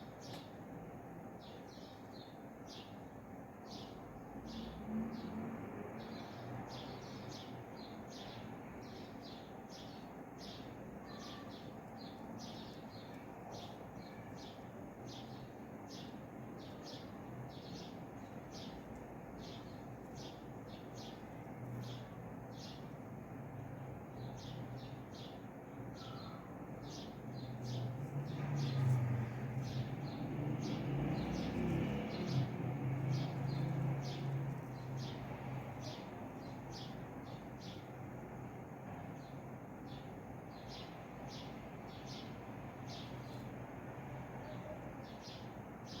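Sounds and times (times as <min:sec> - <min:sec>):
bird chirping: 0:06.0 - 0:22.9, 0:24.2 - 0:37.9, 0:39.2 - 0:43.5.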